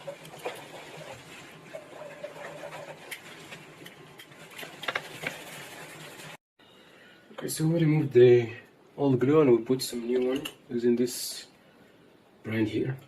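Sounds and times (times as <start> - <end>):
faint steady hum: 6.6 - 13.0.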